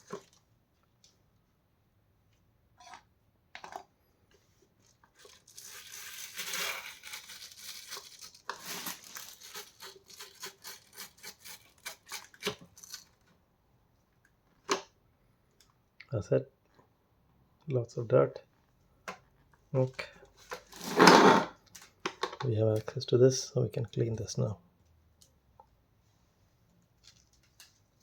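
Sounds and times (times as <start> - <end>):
vacuum brush bar tearing and rasping: 20.7 - 21.6.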